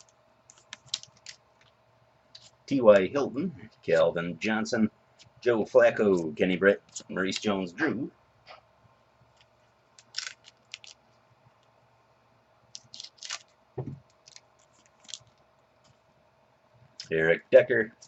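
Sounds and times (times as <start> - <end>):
trading cards being flipped: 0.0 - 1.8.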